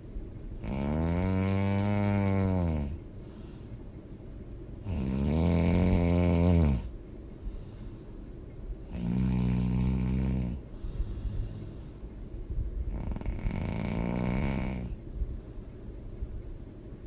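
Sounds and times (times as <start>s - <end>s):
person snoring loudly: 0.6s - 3.0s, 4.8s - 6.9s, 8.9s - 10.6s, 12.9s - 15.0s
quiet breathing: 1.5s - 4.2s, 4.8s - 15.1s.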